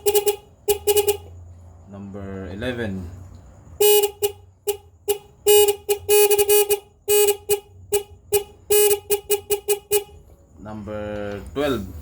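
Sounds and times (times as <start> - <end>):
electronic horn blasts: 0.0 - 1.3, 3.8 - 10.2.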